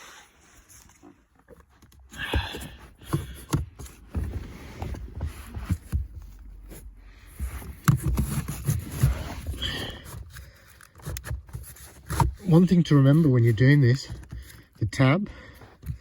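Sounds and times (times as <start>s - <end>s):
plastic knocks and scrapes: 1.7s - 12.7s.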